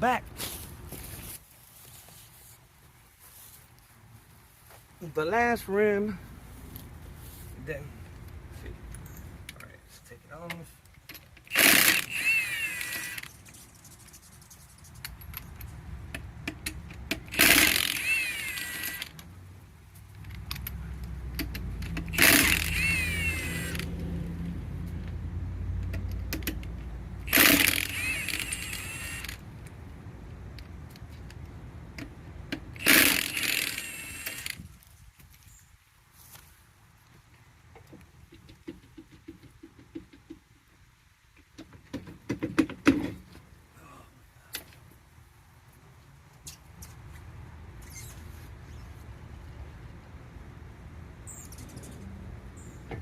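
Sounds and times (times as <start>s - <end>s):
impact wrench rattling: 11.1s - 13.3s, 16.5s - 19.2s, 20.2s - 23.9s, 27.3s - 29.4s, 32.6s - 34.7s.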